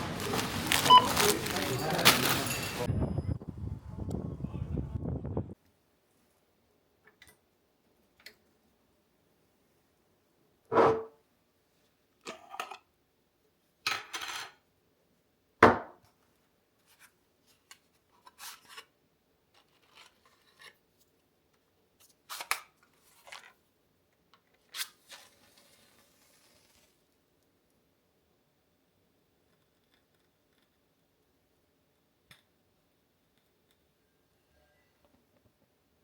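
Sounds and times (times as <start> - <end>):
objects knocked and scraped: 10.7 - 11.2.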